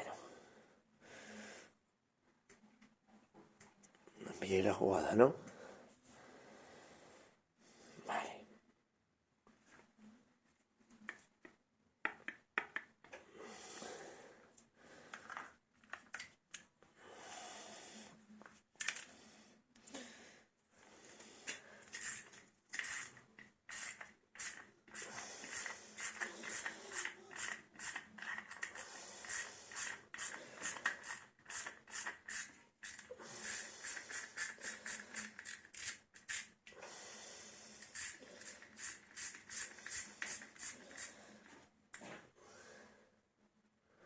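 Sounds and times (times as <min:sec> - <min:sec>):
hands scraping plastic and metal parts: 0:21.5 - 0:36.6, 0:37.8 - 0:41.1.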